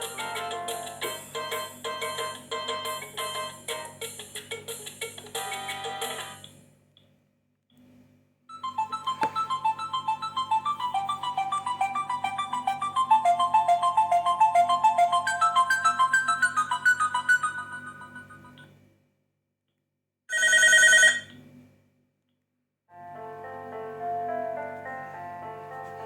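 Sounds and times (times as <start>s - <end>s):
phone ringtone melody: 0.0s - 3.9s, 5.4s - 6.4s, 8.5s - 18.6s, 20.3s - 21.3s.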